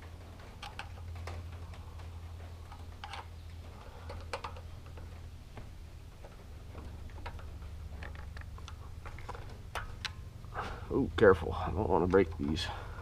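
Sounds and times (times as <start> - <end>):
steady low hum: 0.0 - 13.0
wrench clicking and scraping on bolts: 2.7 - 3.3.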